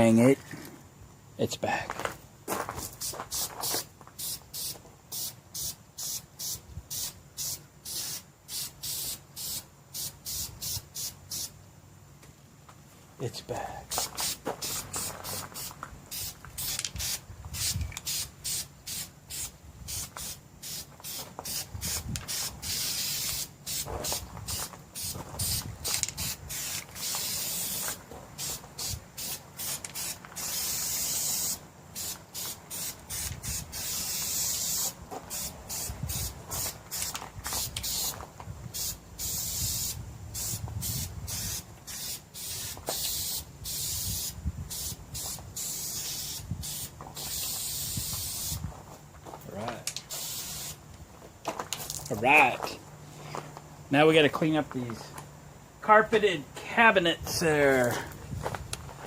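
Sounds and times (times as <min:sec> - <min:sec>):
aerosol spray can spraying: 0:03.0 - 0:11.5, 0:13.9 - 0:38.1, 0:38.8 - 0:48.6, 0:50.0 - 0:50.8.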